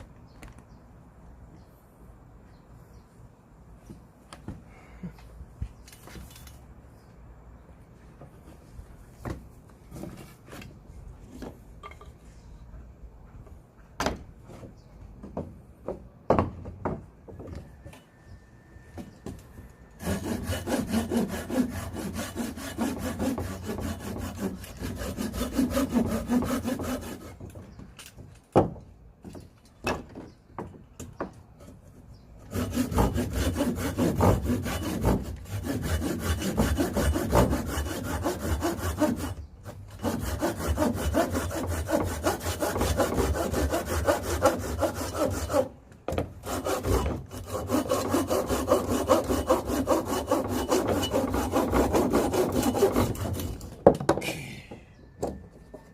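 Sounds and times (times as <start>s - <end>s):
saw cutting firewood: 19.9s - 27.6s, 32.4s - 53.8s.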